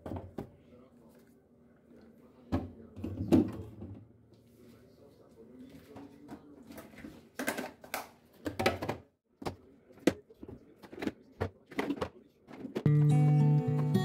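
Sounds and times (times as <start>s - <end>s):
household items clicking and knocking: 6.7s - 12.9s.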